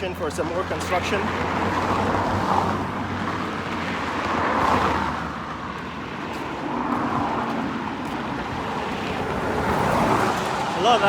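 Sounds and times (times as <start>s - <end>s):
vehicles passing on a road: 0.0s - 11.0s.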